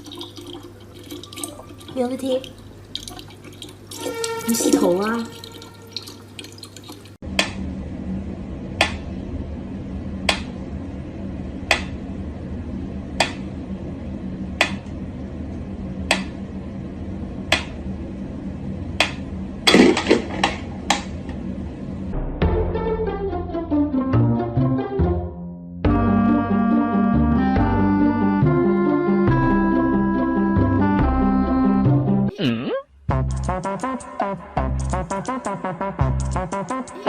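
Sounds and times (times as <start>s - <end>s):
low steady hum: 0.0s - 22.4s.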